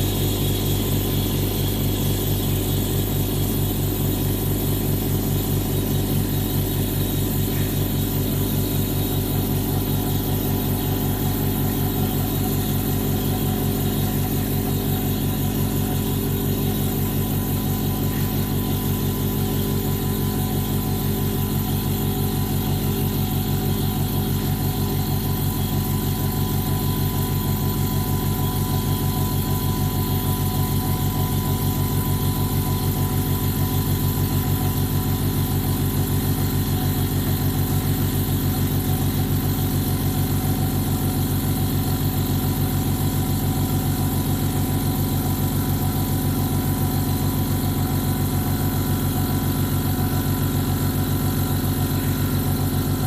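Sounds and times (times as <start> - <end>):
air compressor humming: 0.0 - 53.0.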